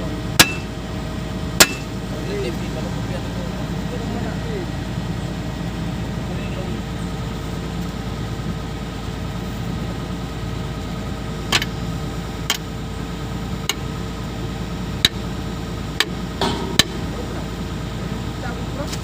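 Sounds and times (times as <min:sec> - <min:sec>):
engine idling: 0:00.0 - 0:19.0
sharp knocks: 0:16.0 - 0:17.1.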